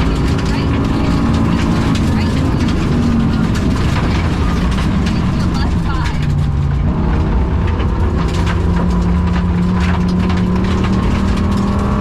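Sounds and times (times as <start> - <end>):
misfiring car engine under load: 0.0 - 12.0
sharp clicks and rattles: 0.0 - 12.0.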